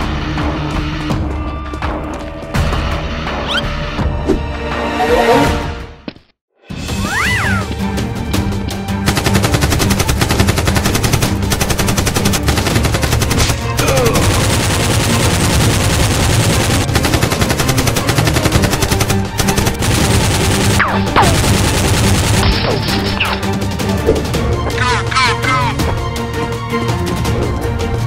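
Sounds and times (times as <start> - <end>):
rapid automatic gunfire: 9.1 - 23.0.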